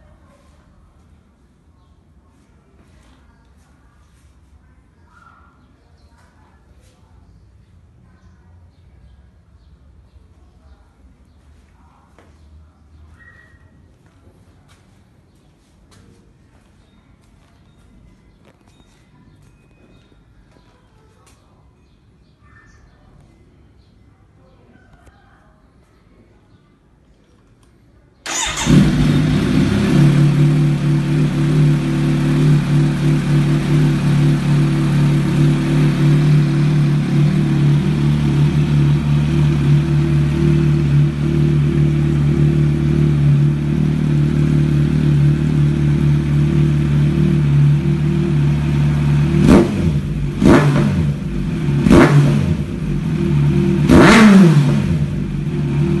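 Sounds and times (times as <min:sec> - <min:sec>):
motorcycle engine idling and revving: 0:28.3 - 0:56.0.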